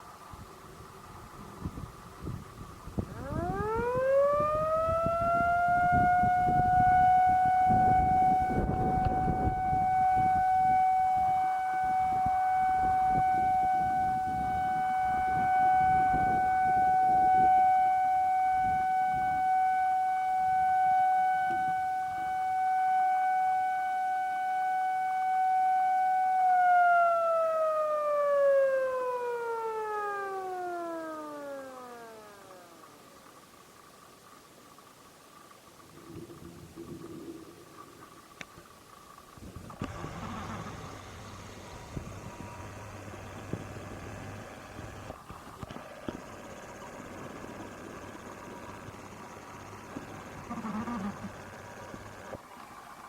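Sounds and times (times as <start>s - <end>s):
wind rumble on microphone: 0.2s - 19.6s, 35.8s - 52.4s
loudspeaker siren wailing: 3.0s - 32.9s.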